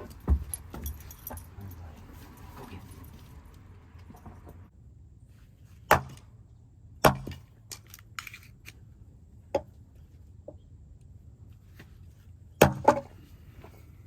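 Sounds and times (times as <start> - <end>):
axe chopping wood: 5.9 - 6.3, 7.0 - 7.5, 12.6 - 13.1.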